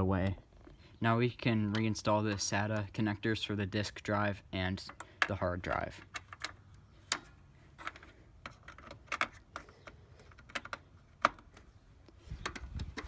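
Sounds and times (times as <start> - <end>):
plastic connector clicks and rattles: 4.9 - 11.7.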